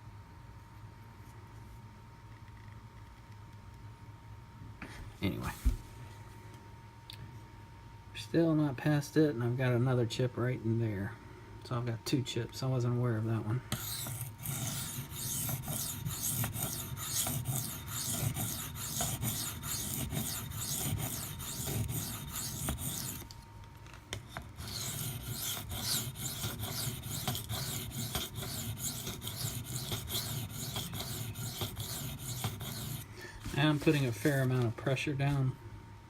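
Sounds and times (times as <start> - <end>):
knife scraping on sharpening stone: 13.8 - 23.2, 24.6 - 33.0.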